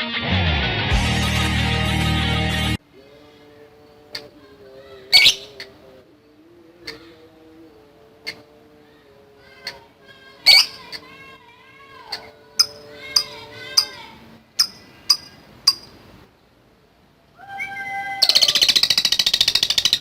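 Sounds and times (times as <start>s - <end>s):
lovebird rattling trill: 5.1s - 5.6s, 10.4s - 11.0s, 12.1s - 16.0s, 18.2s - 20.0s
lovebird chirps: 5.1s - 5.7s, 10.4s - 11.0s, 12.1s - 16.0s, 18.2s - 20.0s.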